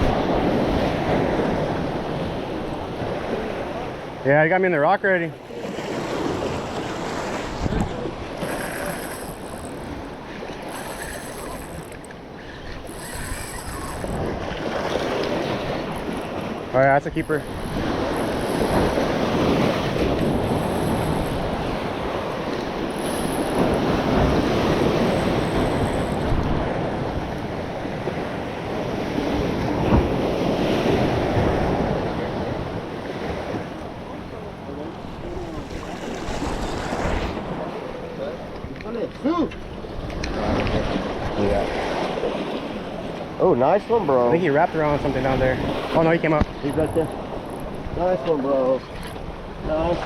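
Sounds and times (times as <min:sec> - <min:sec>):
waves washing against rocks: 0:05.2 - 0:50.0
wind buffeting microphone: 0:05.6 - 0:38.8.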